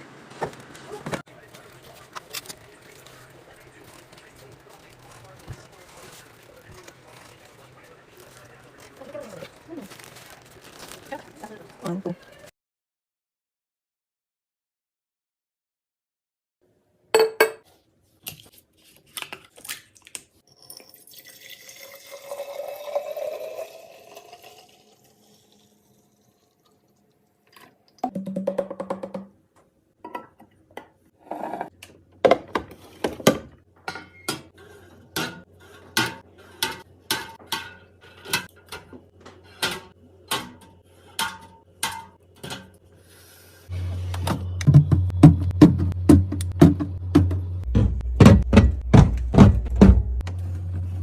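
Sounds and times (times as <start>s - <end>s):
liquid pouring into container: 20.5s - 27.1s.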